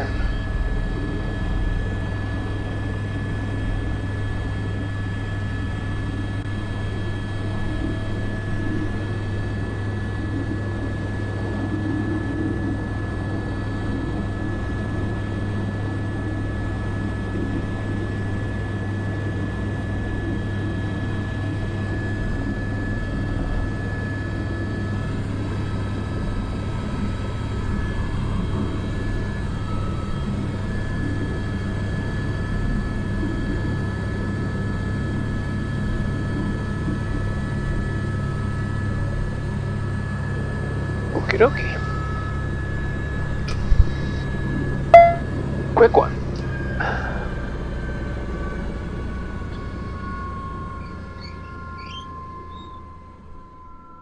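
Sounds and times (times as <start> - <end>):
helicopter engine and rotor drone: 0.0 - 54.0
thin high tone: 45.0 - 46.1.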